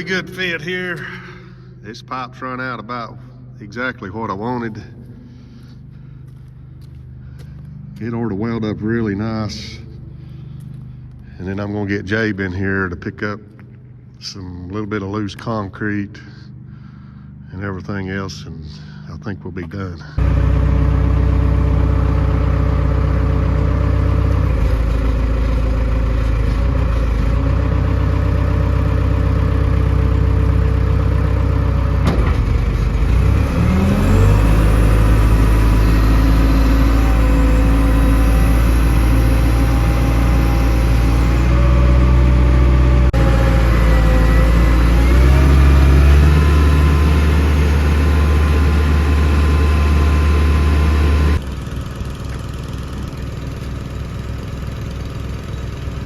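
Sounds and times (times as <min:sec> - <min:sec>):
welder engine running: 0:20.2 - 0:56.0.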